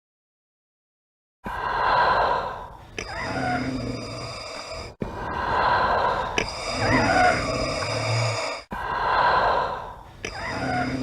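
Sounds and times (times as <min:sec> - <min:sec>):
mechanical respirator breathing: 0:01.5 - 0:11.0
respirator click: 0:06.4 - 0:06.6.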